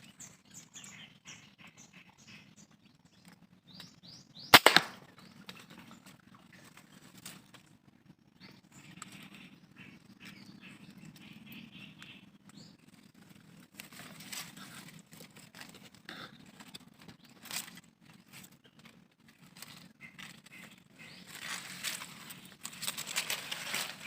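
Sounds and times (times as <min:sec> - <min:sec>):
low steady hum: 0:00.0 - 0:24.0
small rustles and clicks: 0:05.4 - 0:08.0, 0:12.4 - 0:24.0.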